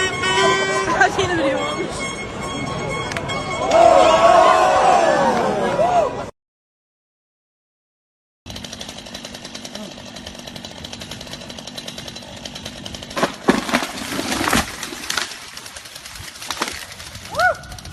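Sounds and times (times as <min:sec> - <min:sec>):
chainsaw engine running: 0:08.5 - 0:17.9
loud cracks and crashes: 0:13.1 - 0:17.1.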